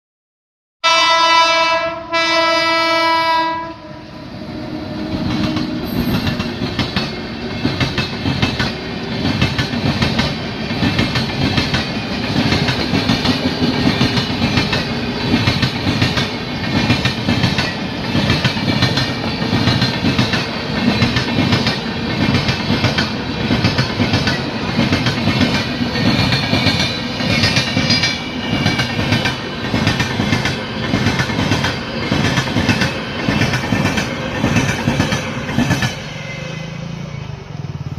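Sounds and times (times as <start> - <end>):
train horn blasts: 0.8 - 6.2
train wheels clickety-clack: 5.0 - 36.4.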